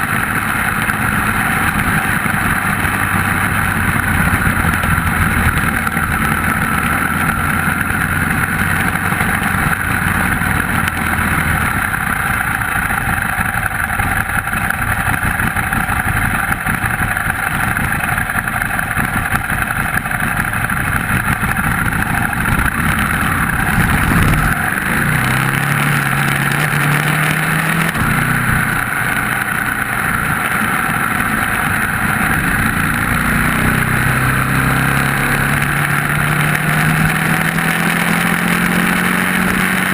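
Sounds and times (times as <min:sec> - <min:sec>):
motorcycle engine revving: 0:00.0 - 0:39.9
wind noise on microphone: 0:20.8 - 0:25.5.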